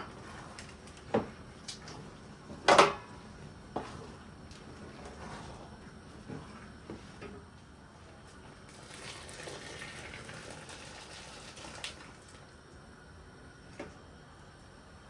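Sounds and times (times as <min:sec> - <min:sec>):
water running: 0:08.6 - 0:12.6.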